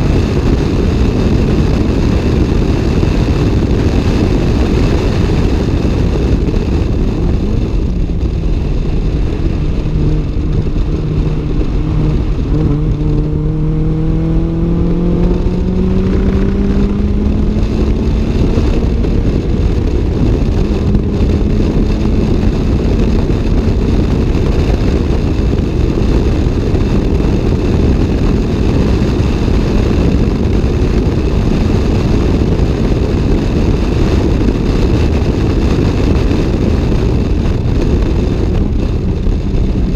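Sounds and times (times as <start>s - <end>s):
car engine and exhaust: 0.0s - 39.9s
road and wind noise: 0.0s - 39.9s.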